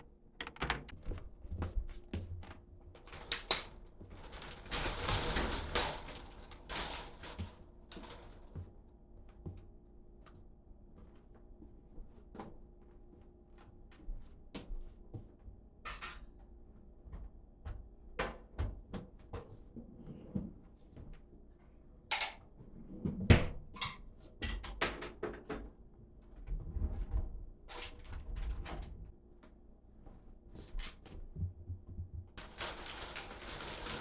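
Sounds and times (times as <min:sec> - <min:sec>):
household knocks and clinks: 0:00.4 - 0:01.9.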